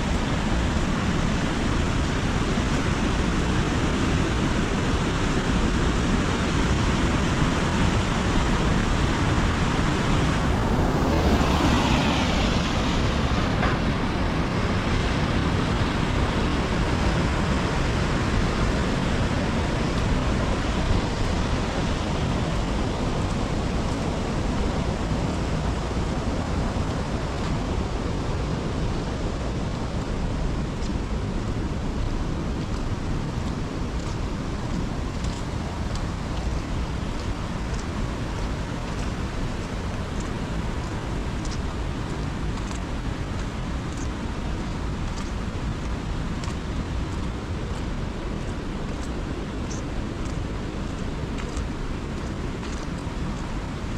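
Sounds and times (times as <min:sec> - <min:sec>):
heavy rain falling: 0:00.0 - 0:24.8, 0:31.5 - 0:53.5.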